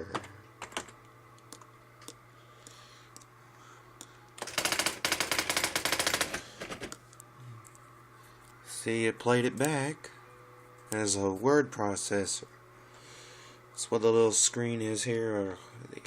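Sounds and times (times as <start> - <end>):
typewriter rapid printing: 0.0 - 1.0, 4.4 - 7.0.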